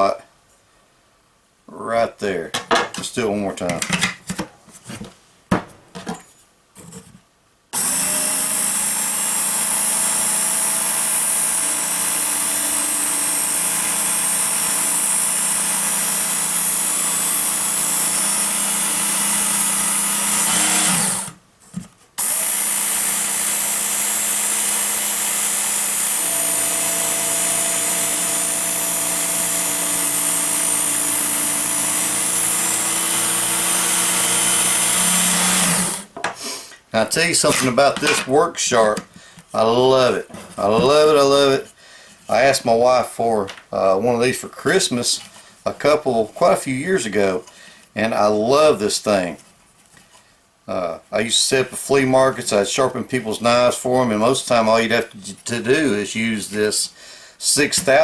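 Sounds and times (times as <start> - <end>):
electric knife sharpener whirring: 7.8 - 21.4, 22.2 - 36.1.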